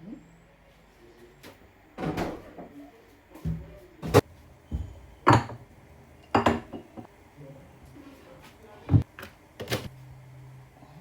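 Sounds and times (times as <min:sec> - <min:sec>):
kitchen items knocking and bumping: 0:03.4 - 0:07.1, 0:08.9 - 0:09.9.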